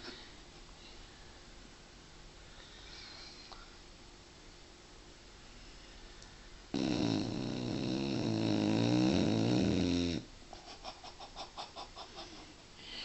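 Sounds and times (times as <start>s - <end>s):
dog snoring: 6.7s - 10.3s.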